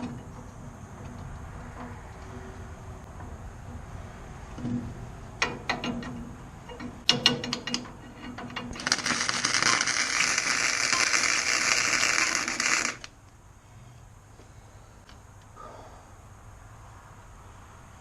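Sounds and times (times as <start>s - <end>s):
metallic clicks and clatter: 5.4s - 13.1s
welding arc hissing and crackling: 8.8s - 13.2s.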